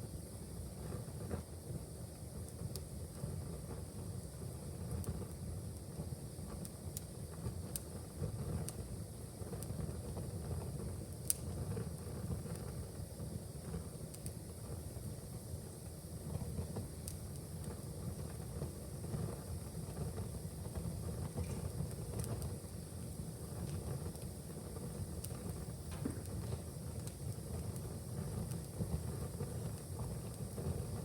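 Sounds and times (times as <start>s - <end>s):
wood fire crackling: 0.4s - 31.0s.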